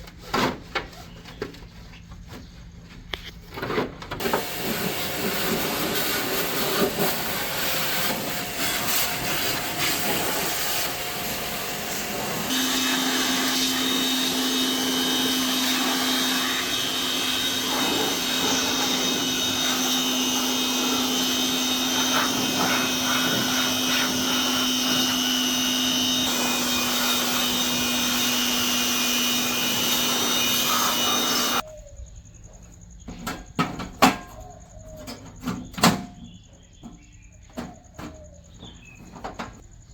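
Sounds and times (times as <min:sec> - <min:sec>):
motor-driven tool whirring: 0:04.2 - 0:31.6.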